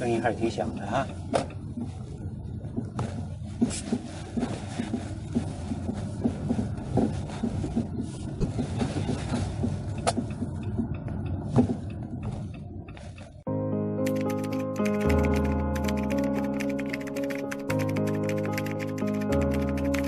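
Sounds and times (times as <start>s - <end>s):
road rumble: 0.0s - 13.5s
suspension clunking knocks: 1.0s - 13.4s.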